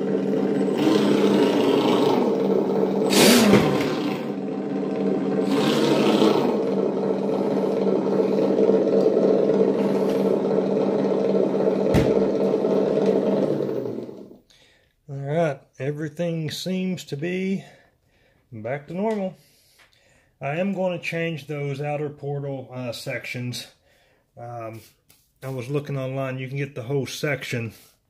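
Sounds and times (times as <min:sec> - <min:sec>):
toy car motor whining: 0:00.0 - 0:11.1.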